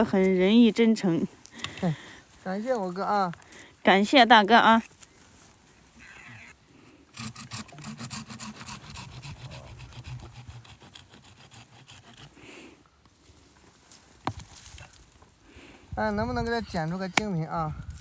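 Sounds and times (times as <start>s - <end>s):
saw cutting wood: 7.1s - 12.4s.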